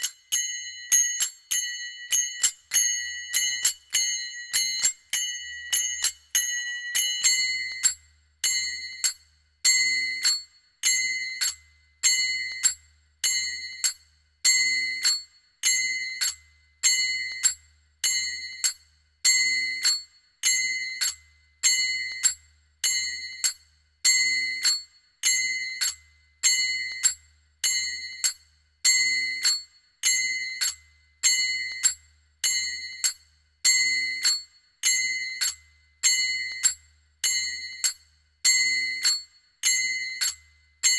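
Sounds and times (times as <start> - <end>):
hand cymbals clashing: 0.0 - 7.4.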